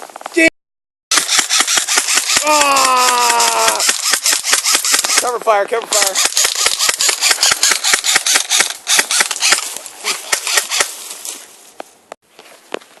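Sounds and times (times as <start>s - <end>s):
airsoft guns firing: 1.1s - 10.9s.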